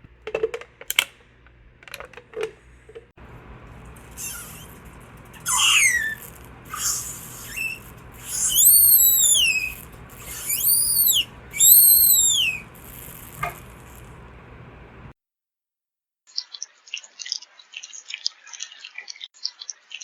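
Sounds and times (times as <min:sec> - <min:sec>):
gliding whistle-like tones: 0:04.2 - 0:14.0.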